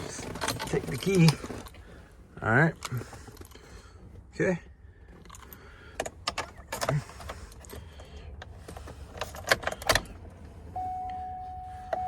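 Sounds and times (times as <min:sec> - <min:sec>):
car keys jangling: 0:05.1 - 0:10.2.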